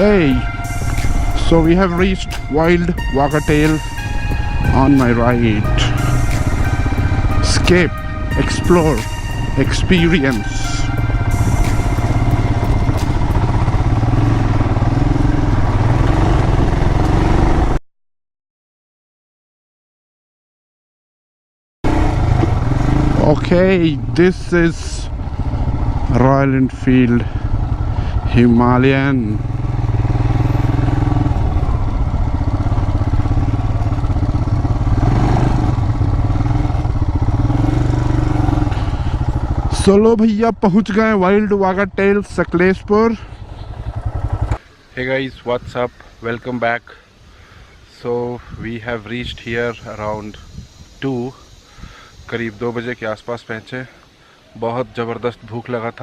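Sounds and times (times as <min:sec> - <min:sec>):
motorcycle engine running: 0:00.0 - 0:17.8, 0:21.8 - 0:44.7.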